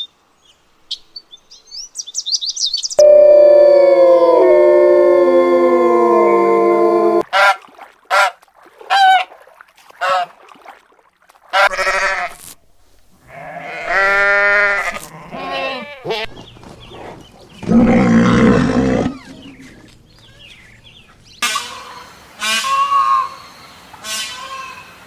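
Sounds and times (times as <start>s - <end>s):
animal wavering cries: 3.0s - 7.2s, 17.6s - 19.9s
loud rough animal call: 3.0s - 7.2s, 13.3s - 19.9s.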